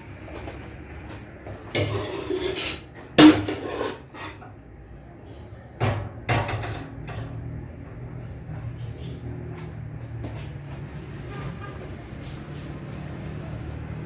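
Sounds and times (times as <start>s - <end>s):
dishes knocking: 1.8s - 4.0s, 5.8s - 7.3s.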